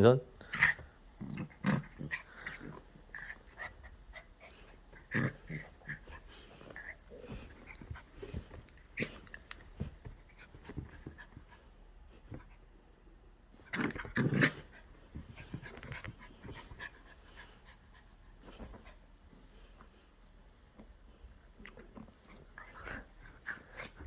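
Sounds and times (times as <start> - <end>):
dog shuffling: 0.4 - 12.8, 13.5 - 24.0
dog breathing: 1.8 - 11.7.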